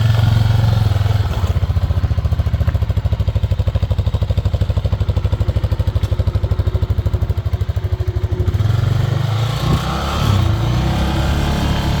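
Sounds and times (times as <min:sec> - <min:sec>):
atv engine idling: 0:00.0 - 0:09.6.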